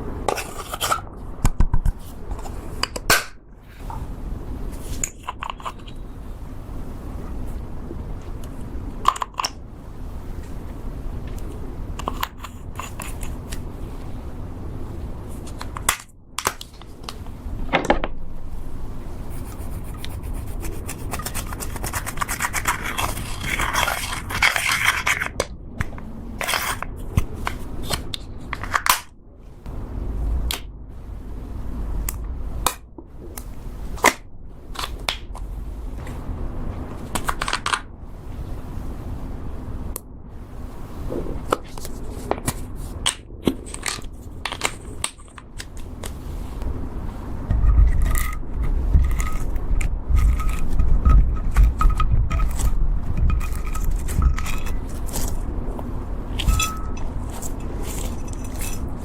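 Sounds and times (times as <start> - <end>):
rubbing and scraping: 19.0 - 25.4, 26.3 - 37.8, 45.6 - 59.0.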